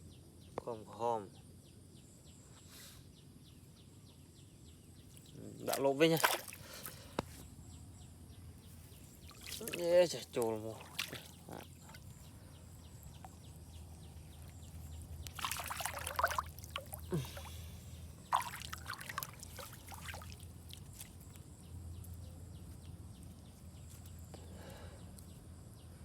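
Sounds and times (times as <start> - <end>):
faint water trickle: 5.0 - 25.4
water splashing and sloshing: 5.1 - 7.5, 8.6 - 22.2.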